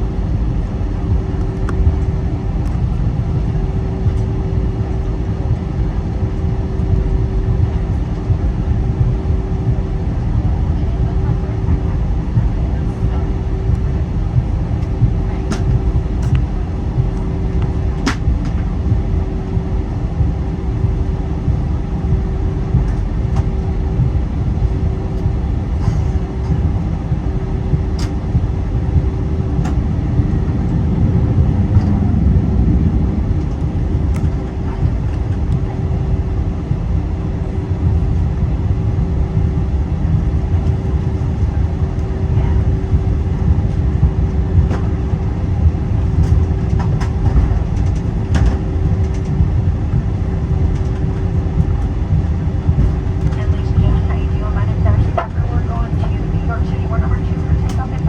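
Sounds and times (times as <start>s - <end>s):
constant cabin hum: 0.0s - 58.0s
jet engine and airflow rumble: 0.0s - 58.0s
faint cabin clicks and rattles: 10.3s - 28.5s, 29.4s - 36.6s, 40.2s - 58.0s.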